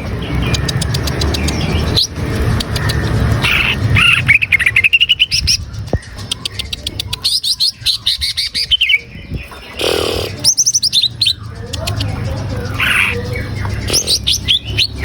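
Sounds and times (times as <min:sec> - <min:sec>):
songbird chirping song: 0:00.0 - 0:15.0.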